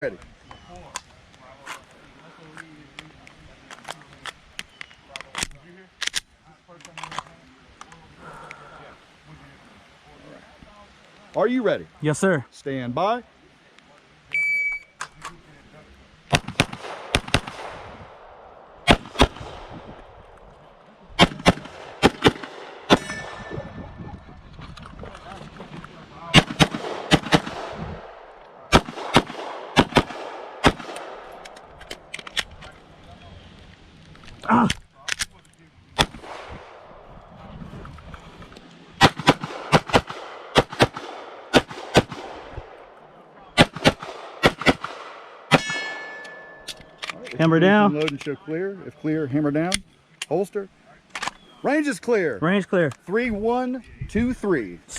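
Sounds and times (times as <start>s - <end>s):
pistol shots: 16.3s - 20.2s, 21.2s - 23.7s, 26.3s - 32.6s, 36.0s - 37.0s, 39.0s - 42.9s, 43.6s - 46.7s.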